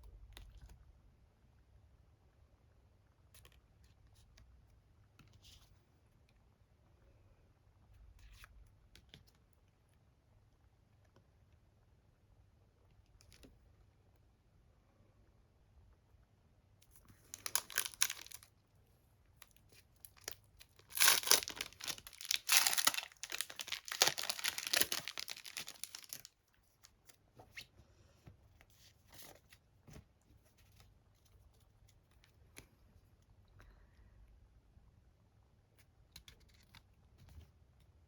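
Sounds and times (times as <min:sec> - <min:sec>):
card pack wrapping tearing: 0:17.3 - 0:18.4, 0:20.0 - 0:26.3.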